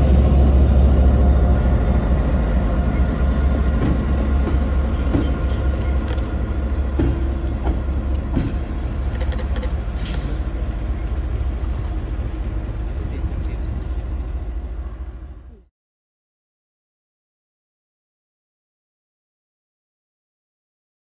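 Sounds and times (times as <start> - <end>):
diesel locomotive engine rumble: 0.0 - 15.7
air release hiss: 10.0 - 10.5.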